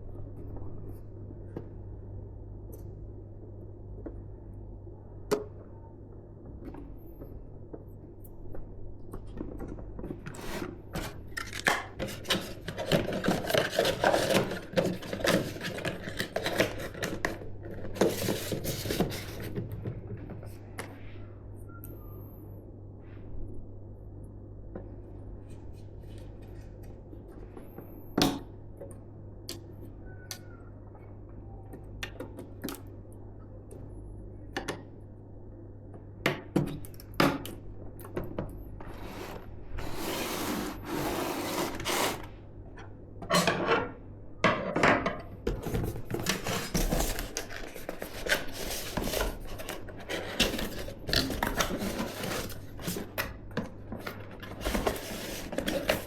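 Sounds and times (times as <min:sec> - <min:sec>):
packaging rustling and scraping: 0:10.2 - 0:19.7, 0:38.8 - 0:42.3, 0:45.5 - 0:53.3, 0:53.9 - 0:56.0.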